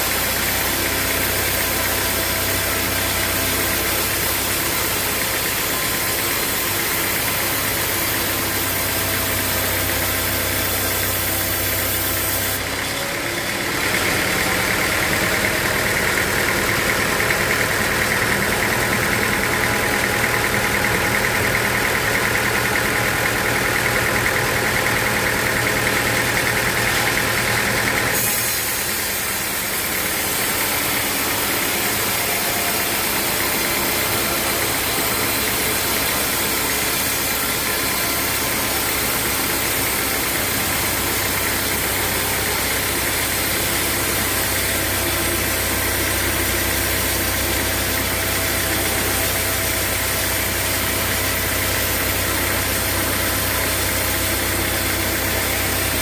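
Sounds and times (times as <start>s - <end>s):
loud high-pitched machine sound: 0.0s - 56.0s
sawmill machinery running: 0.0s - 56.0s.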